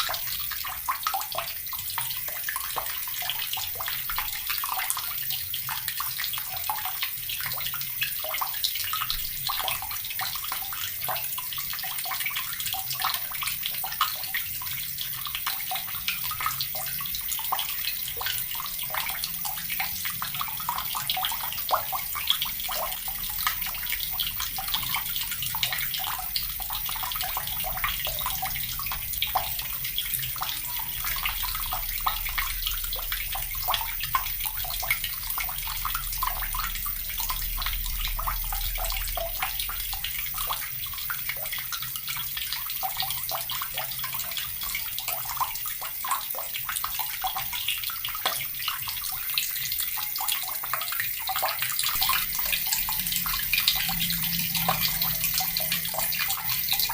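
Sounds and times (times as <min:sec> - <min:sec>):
water tap running: 0:00.0 - 0:56.9.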